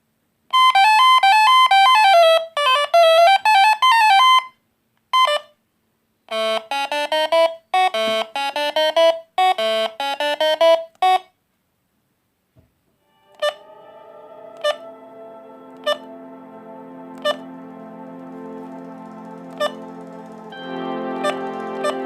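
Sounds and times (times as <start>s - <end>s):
soft music with held chords: 13.0s - 22.0s
monophonic phone ringtone: 13.2s - 13.9s, 14.5s - 15.0s, 15.7s - 16.3s, 17.1s - 17.5s, 18.4s - 22.0s.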